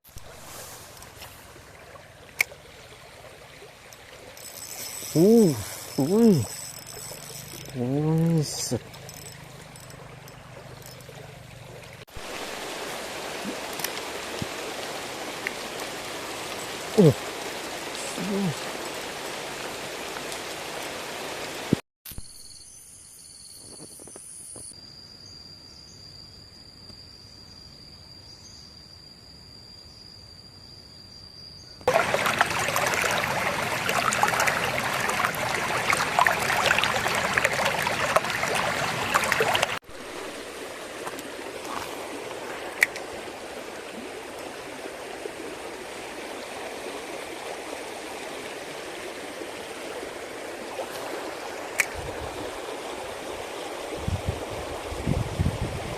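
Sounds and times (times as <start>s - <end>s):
mountain stream rushing water: 0.1s - 21.8s, 31.9s - 55.9s
loud rushing water or heavy rain: 12.1s - 21.8s, 31.9s - 55.9s.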